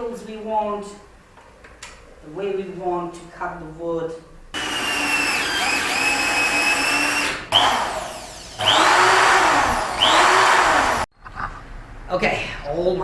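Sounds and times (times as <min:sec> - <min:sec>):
power tool motor whine: 0:04.6 - 0:11.1.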